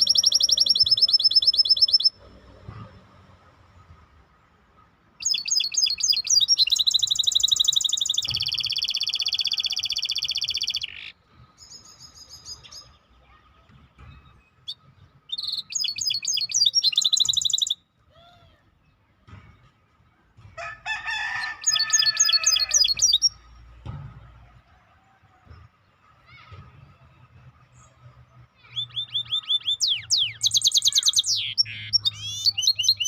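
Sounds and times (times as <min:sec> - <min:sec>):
songbird singing rapid trills: 0:00.0 - 0:02.1, 0:05.2 - 0:13.3, 0:14.6 - 0:17.8, 0:21.6 - 0:23.5, 0:28.6 - 0:33.0.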